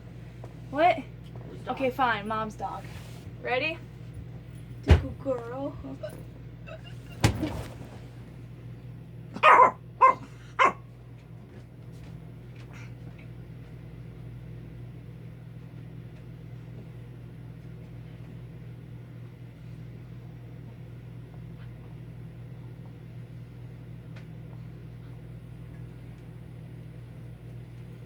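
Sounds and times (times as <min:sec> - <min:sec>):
steady low hum: 0:00.0 - 0:28.0
dog barking: 0:09.4 - 0:10.8.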